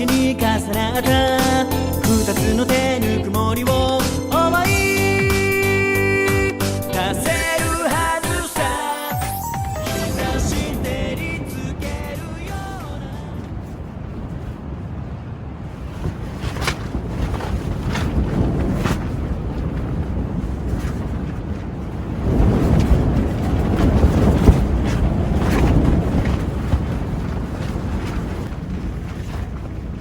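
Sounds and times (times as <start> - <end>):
sharp flaps: 7.3 - 14.9, 15.6 - 30.0
gusty wind buffeting microphone: 9.5 - 30.0.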